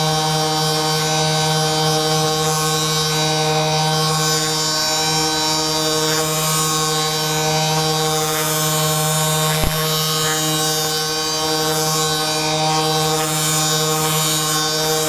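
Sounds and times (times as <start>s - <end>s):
vibration massager humming: 5.1s - 11.7s
short click: 9.5s - 9.8s.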